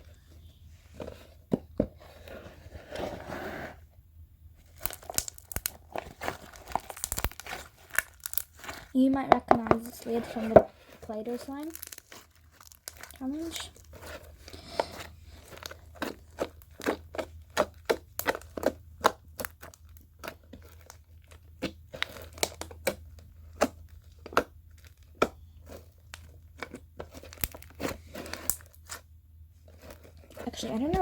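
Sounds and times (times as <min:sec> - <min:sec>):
slime clicking and popping: 0:04.8 - 0:08.9, 0:15.5 - 0:28.7.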